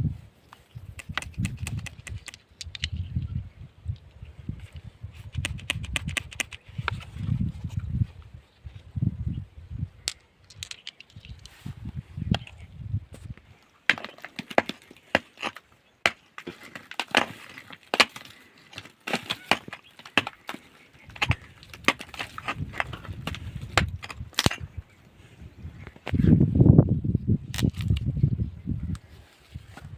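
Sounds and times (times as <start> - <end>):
rock cracking under blows: 0.8 - 3.0, 13.1 - 24.8, 27.4 - 28.1.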